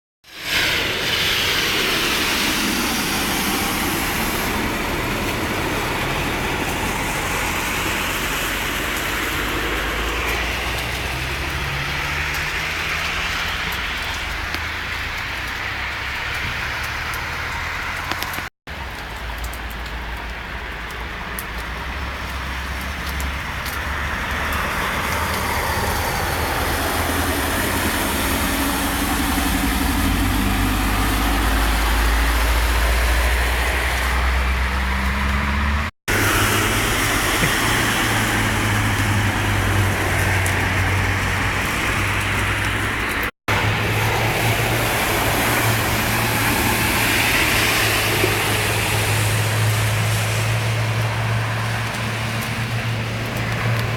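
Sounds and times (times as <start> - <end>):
heavy downpour hissing: 0.3 - 35.3, 36.1 - 53.9.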